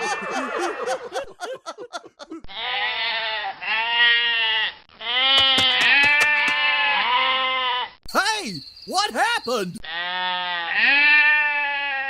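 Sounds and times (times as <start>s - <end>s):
livestock bleating: 2.6s - 7.8s, 9.9s - 12.0s.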